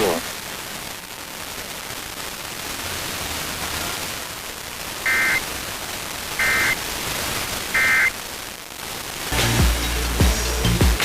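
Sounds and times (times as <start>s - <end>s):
radio static hiss: 0.0s - 11.0s
warbling data bursts: 2.5s - 6.9s, 7.6s - 8.2s.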